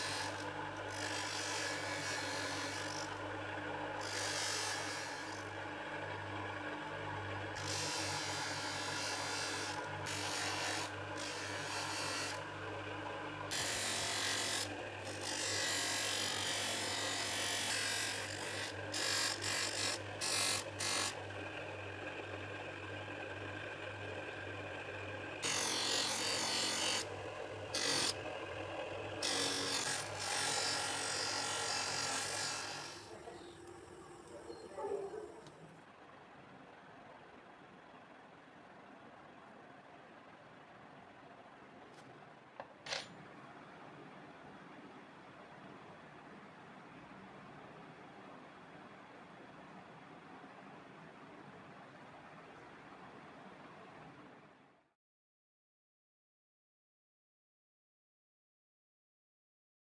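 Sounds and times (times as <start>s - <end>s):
steady motor hum: 0.0s - 15.1s.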